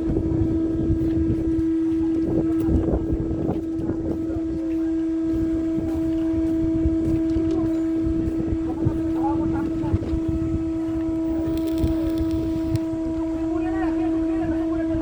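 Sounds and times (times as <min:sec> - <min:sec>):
steady machinery hum: 0:11.2 - 0:12.8.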